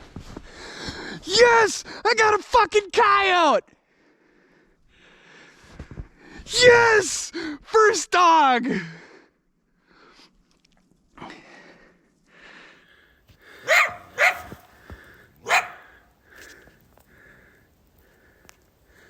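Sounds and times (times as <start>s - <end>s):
coyote breathing: 11.2s - 19.0s
coyote barking: 13.5s - 16.2s.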